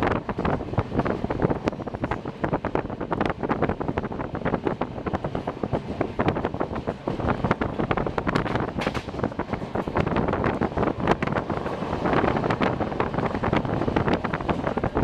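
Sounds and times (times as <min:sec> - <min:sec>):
train wheels rattling and clattering: 0:00.0 - 0:15.0
wind buffeting microphone: 0:00.0 - 0:15.0.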